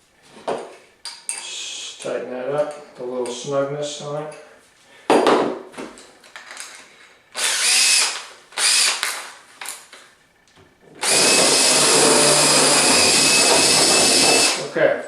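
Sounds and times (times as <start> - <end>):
power drill boring into wood: 7.4 - 9.0, 11.0 - 14.7.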